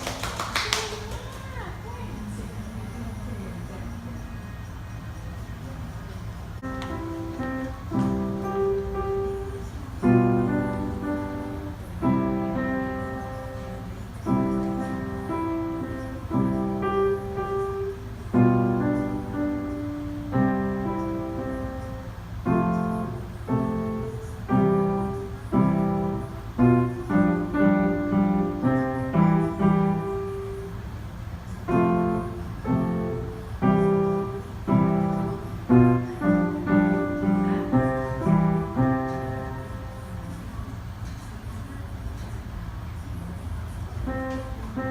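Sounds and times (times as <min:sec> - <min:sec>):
piano music: 0:06.5 - 0:41.2, 0:44.0 - 0:44.9.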